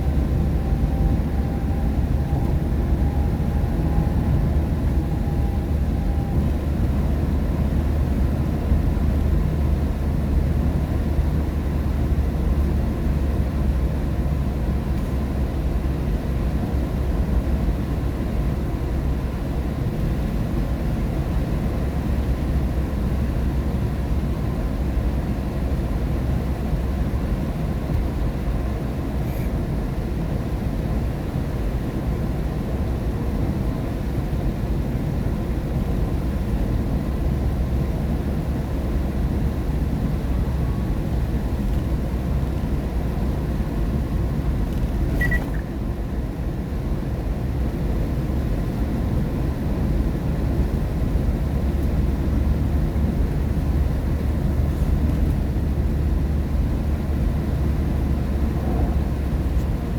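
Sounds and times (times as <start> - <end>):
tyre and engine rumble: 34.6 - 59.9.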